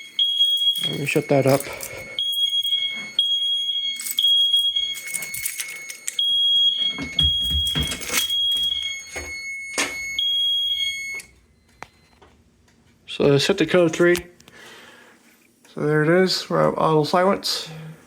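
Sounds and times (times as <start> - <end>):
fire alarm horns beeping: 0.0 - 12.3.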